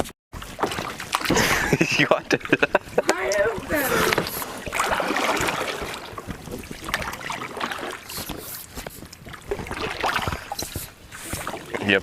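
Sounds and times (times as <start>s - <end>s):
knocks and clicks on hull: 0.4s - 12.0s
paddle splashing and dripping: 0.4s - 12.0s.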